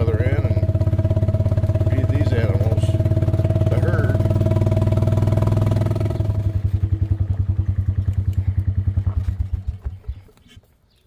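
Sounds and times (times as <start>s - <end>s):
small engine idling: 0.0s - 10.6s.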